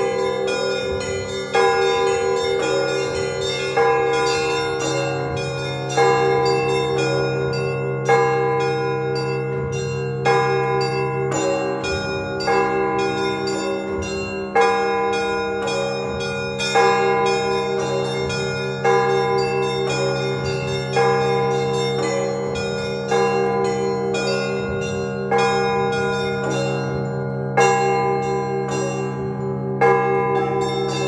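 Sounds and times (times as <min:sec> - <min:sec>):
church bells pealing: 0:00.0 - 0:31.0
deep bells ringing: 0:00.0 - 0:31.0.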